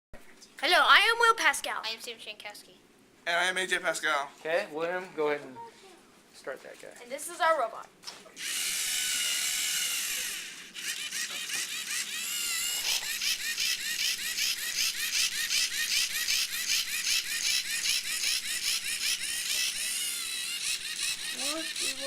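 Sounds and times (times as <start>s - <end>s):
robot electric motors whirring: 8.4s - 22.0s.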